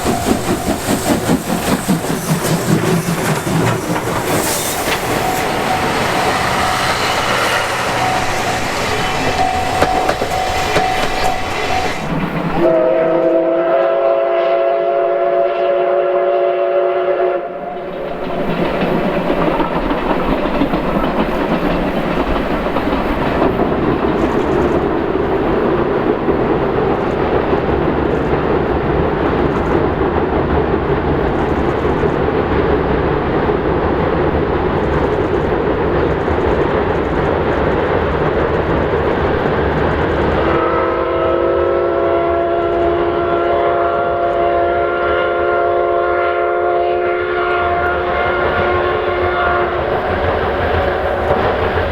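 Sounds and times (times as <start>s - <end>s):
steam locomotive whistle: 0.0s - 17.8s, 40.5s - 51.7s
train rumbling on iron bridge: 0.0s - 51.9s.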